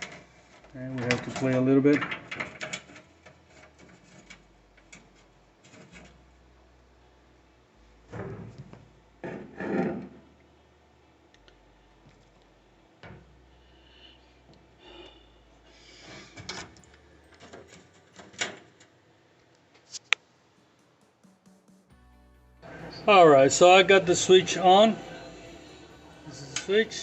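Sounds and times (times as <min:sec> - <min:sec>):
hands rubbing and rustling wiring: 0:00.0 - 0:06.3.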